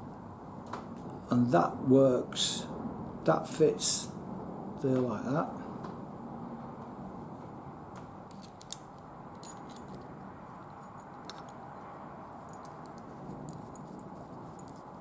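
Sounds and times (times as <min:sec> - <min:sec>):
small steel parts clicking: 0:08.3 - 0:10.1, 0:10.7 - 0:11.6, 0:12.4 - 0:15.0.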